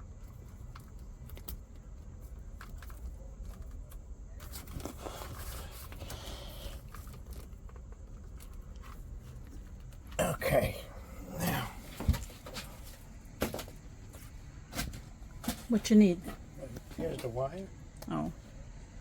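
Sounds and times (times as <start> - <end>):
cables rustling and clicking: 0.0 - 10.2
steady low hum: 0.0 - 19.0.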